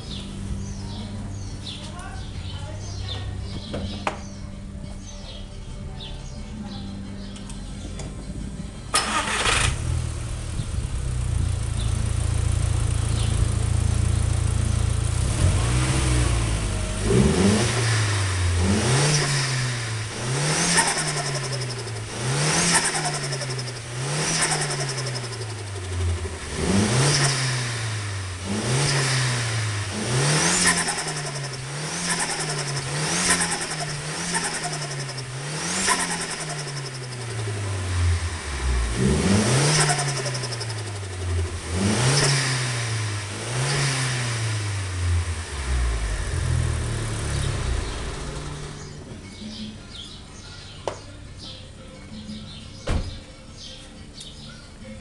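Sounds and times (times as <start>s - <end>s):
turbocharged engine revving: 8.9s - 49.7s.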